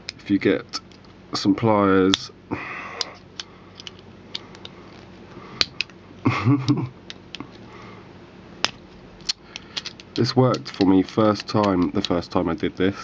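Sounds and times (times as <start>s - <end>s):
pliers clicking and tapping on metal: 8.6s - 12.2s.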